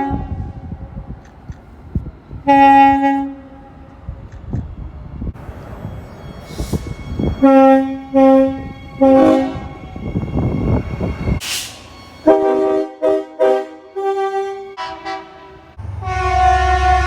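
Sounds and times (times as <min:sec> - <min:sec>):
locomotive air horn blasts: 0:00.0 - 0:00.6, 0:02.5 - 0:03.7, 0:07.2 - 0:09.8, 0:11.4 - 0:17.0
second train horn: 0:00.0 - 0:00.8, 0:02.5 - 0:03.8, 0:06.6 - 0:10.2, 0:11.4 - 0:17.0
passing train rumble: 0:00.0 - 0:17.0.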